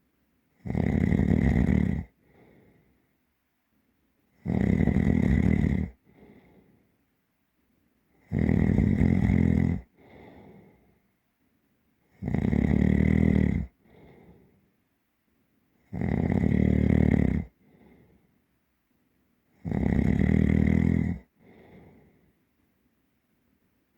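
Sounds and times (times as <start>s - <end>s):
deep heavy snoring: 0.6s - 2.2s, 4.4s - 6.3s, 8.2s - 10.7s, 12.2s - 14.4s, 15.9s - 18.0s, 19.6s - 22.1s
soft breath: 2.1s - 3.2s, 5.9s - 7.1s, 9.8s - 11.2s, 13.6s - 14.9s, 17.4s - 18.5s, 21.2s - 22.6s.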